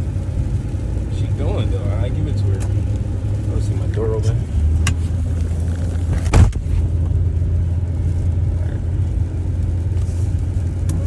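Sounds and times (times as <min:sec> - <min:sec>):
engine and road rumble: 0:00.0 - 0:11.0
loud thump: 0:06.1 - 0:06.8.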